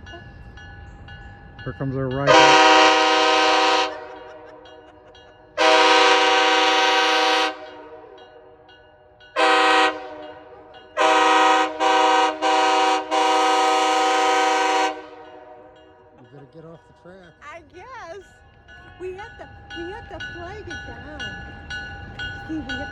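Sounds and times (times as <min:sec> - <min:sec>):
train air horn blasts: 0:02.2 - 0:04.4, 0:05.6 - 0:08.2, 0:09.4 - 0:15.9.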